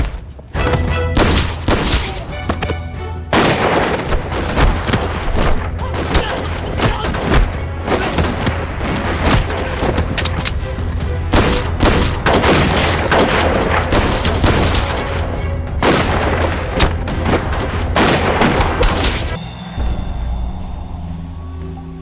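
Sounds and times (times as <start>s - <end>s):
dramatic background music: 0.0s - 22.0s
gunfire shots: 1.2s - 2.3s, 3.3s - 10.6s, 11.3s - 15.2s, 15.8s - 19.4s.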